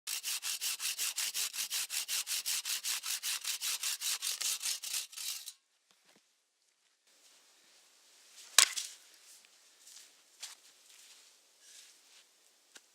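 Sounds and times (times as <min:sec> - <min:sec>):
wood scraping strokes: 0:00.1 - 0:05.6.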